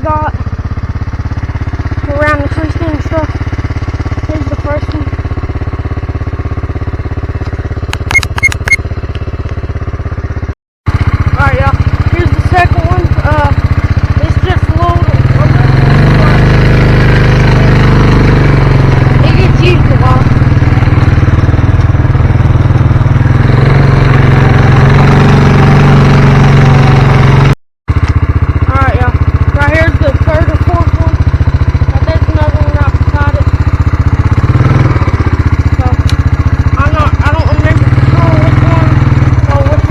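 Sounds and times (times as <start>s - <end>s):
small engine running: 0.0s - 39.9s
sharp metallic clicks: 7.4s - 9.6s.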